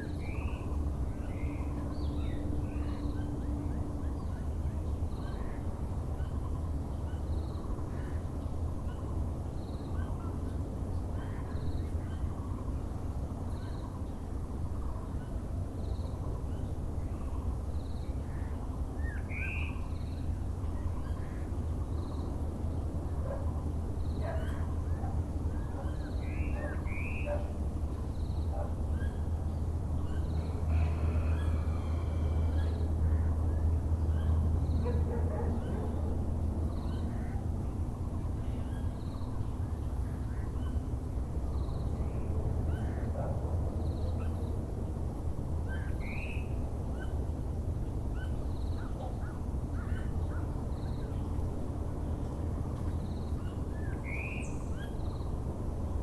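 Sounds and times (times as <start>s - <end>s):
low background rumble: 0.0s - 56.0s
birds calling: 13.5s - 44.6s, 45.6s - 55.4s.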